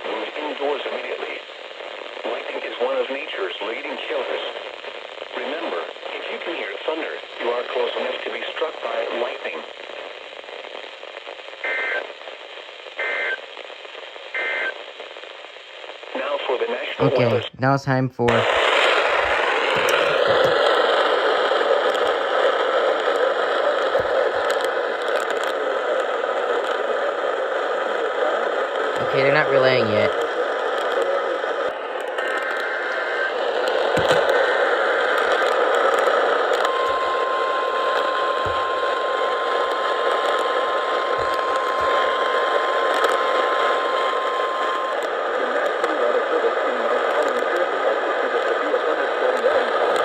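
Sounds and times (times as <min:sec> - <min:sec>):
radio static hiss: 0:00.0 - 0:50.0
faint crackles: 0:18.3 - 0:50.0.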